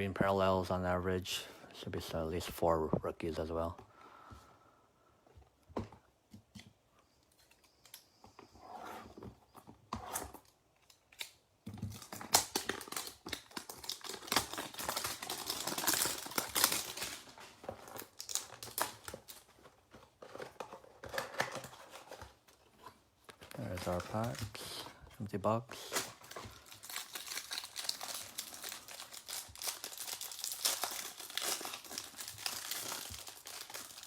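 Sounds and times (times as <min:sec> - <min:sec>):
packaging crinkling and tearing: 0:10.1 - 0:34.0.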